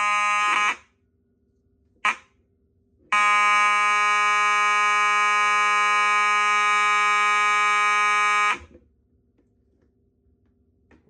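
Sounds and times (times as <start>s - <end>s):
electromechanical alarm horn tone: 0.0s - 1.0s, 2.0s - 2.4s, 3.0s - 8.8s.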